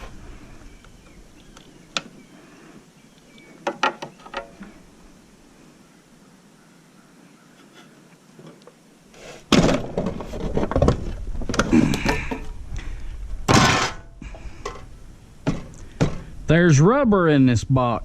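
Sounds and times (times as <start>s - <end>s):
sharp metal crash: 13.5s - 14.2s
metal scrap knocking and clattering: 13.5s - 14.8s.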